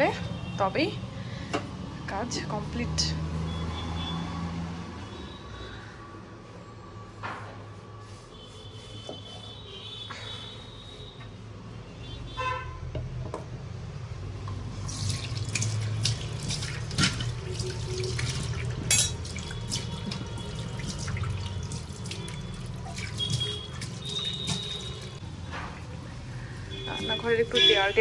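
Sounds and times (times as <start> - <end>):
clinks of items rinsed: 14.8 - 26.0.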